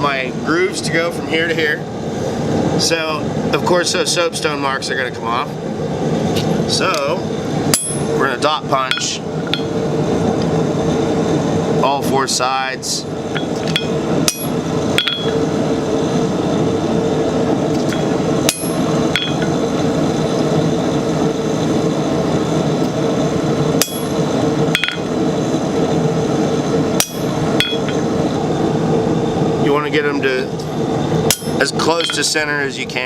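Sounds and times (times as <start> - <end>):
steady drone: 0.0 - 33.0
hammer striking steel punch: 7.7 - 8.1, 13.4 - 15.4, 17.9 - 19.5, 23.8 - 24.2, 24.8 - 25.1, 27.0 - 28.0, 31.3 - 32.3.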